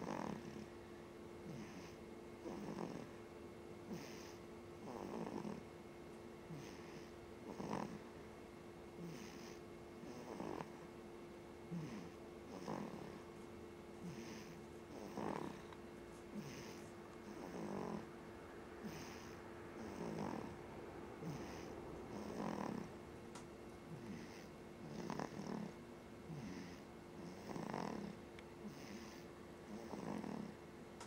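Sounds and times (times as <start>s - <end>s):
snoring: 0.0s - 0.7s, 1.4s - 3.2s, 3.9s - 5.7s, 6.5s - 8.1s, 9.0s - 10.9s, 11.7s - 13.2s, 14.0s - 15.7s, 16.3s - 18.1s, 18.8s - 20.6s, 21.2s - 22.9s, 23.9s - 30.6s
steady hum: 0.0s - 31.0s.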